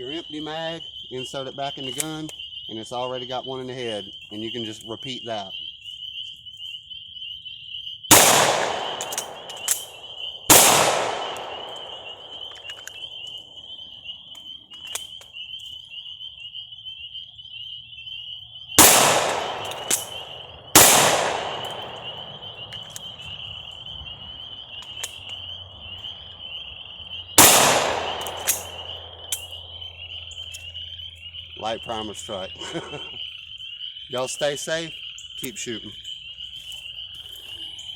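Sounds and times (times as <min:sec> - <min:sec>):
high insect drone: 0:00.0 - 0:37.9
pistol shots echoing: 0:08.1 - 0:13.8, 0:18.8 - 0:30.6.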